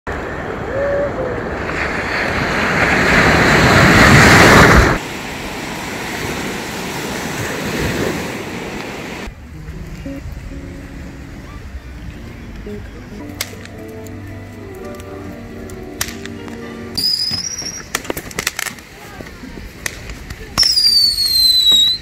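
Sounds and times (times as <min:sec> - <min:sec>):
sea waves washing onto beach: 0:00.3 - 0:11.5
faint musical notes: 0:09.3 - 0:17.1.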